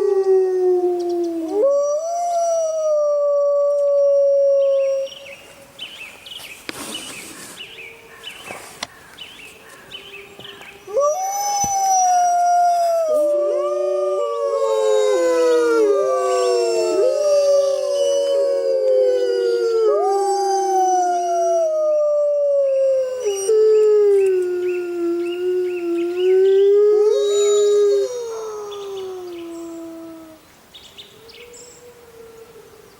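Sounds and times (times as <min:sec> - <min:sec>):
wolves howling: 0:10.0 - 0:30.4.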